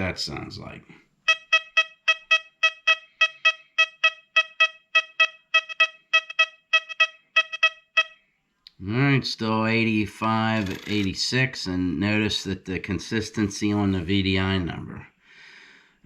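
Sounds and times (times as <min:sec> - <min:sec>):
metal detector beeping: 0:01.2 - 0:08.2, 0:10.6 - 0:11.1.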